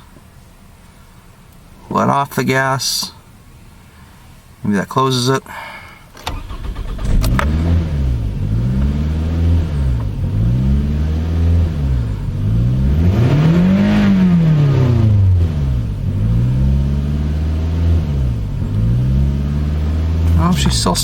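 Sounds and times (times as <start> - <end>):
car engine with surging idle: 6.2 - 21.0.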